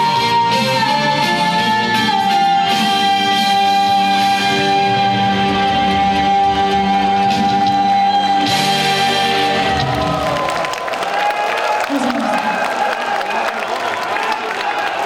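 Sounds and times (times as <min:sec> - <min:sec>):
trot song with band and guitar: 0:00.0 - 0:10.4.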